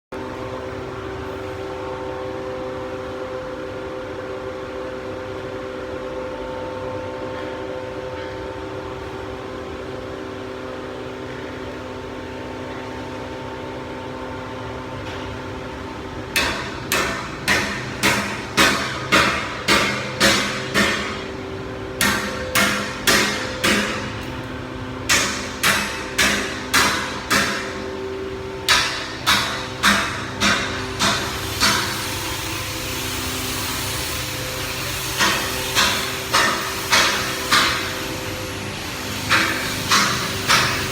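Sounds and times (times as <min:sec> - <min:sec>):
machinery humming: 0:00.2 - 0:40.9
metal-on-metal strikes: 0:16.4 - 0:21.4, 0:22.0 - 0:24.3, 0:25.1 - 0:28.0, 0:28.6 - 0:32.5.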